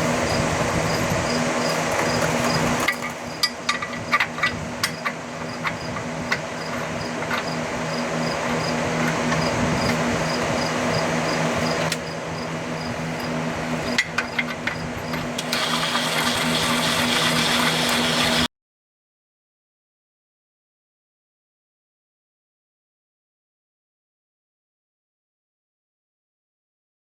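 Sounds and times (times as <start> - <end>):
steady low hum: 0.0 - 18.5.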